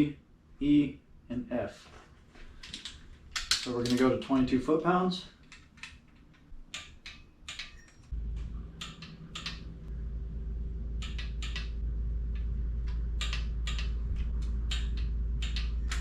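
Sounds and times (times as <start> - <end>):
low machine hum: 7.1 - 16.0.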